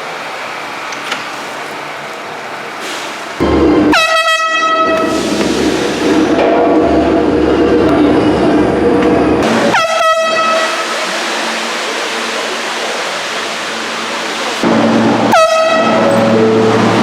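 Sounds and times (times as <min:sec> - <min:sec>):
air horn blasting: 0:03.4 - 0:05.3, 0:09.4 - 0:10.9, 0:14.6 - 0:16.8.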